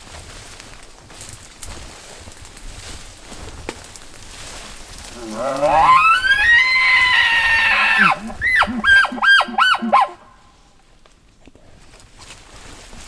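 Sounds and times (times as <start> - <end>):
elk bugling: 5.1 - 10.4
elk chuckles: 5.2 - 10.2.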